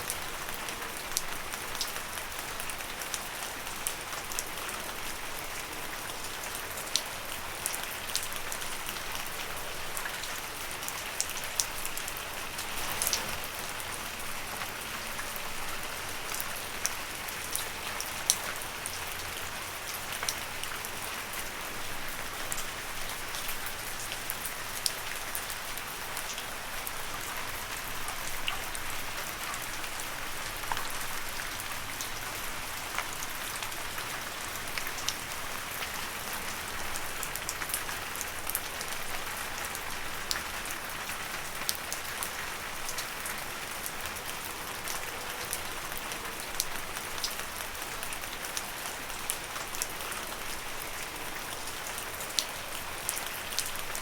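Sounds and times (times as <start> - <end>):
rain falling on leaves: 0.0 - 54.0.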